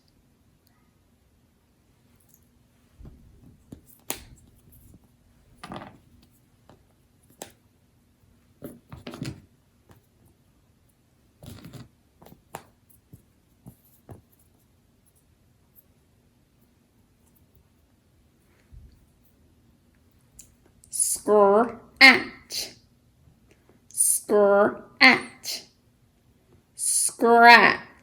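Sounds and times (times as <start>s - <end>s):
soft rustles and taps of handling: 2.0s - 16.0s.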